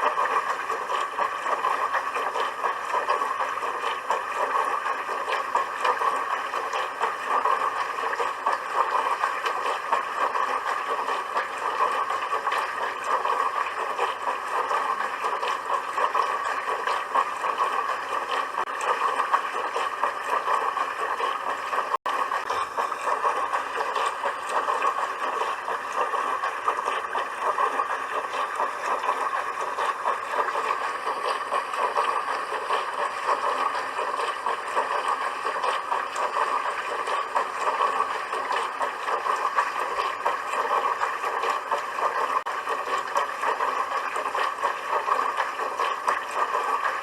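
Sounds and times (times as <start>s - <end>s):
dishwasher water churning and spraying: 0.0s - 47.0s.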